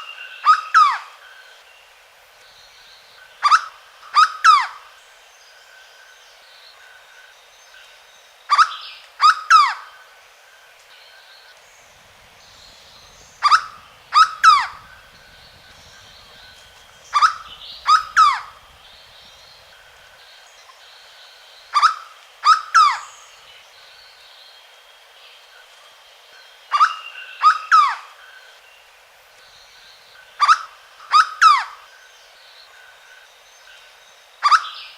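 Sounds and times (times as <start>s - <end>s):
bird calling falling notes: 11.9s - 20.2s.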